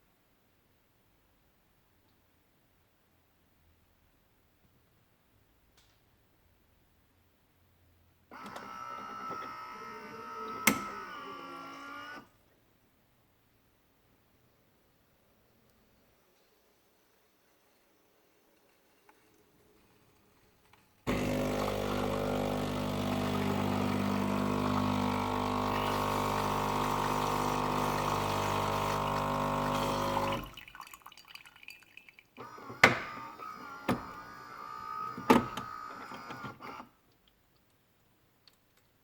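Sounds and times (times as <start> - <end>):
coffee machine pump humming: 8.3 - 12.2, 21.1 - 31.0, 32.4 - 36.5
water sounds: 21.2 - 32.4.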